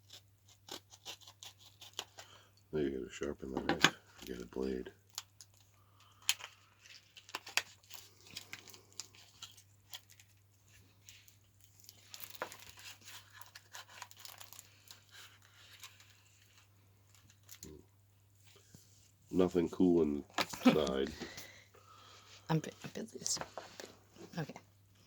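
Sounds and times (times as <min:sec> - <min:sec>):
cellophane wrapper crinkling: 0:04.0 - 0:17.8.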